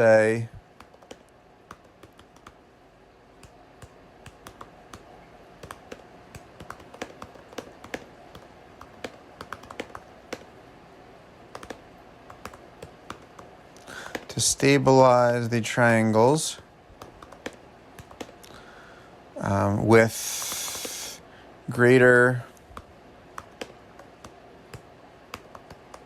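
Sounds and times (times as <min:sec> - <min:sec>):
keyboard key clicks: 0:05.6 - 0:10.5, 0:11.6 - 0:13.4.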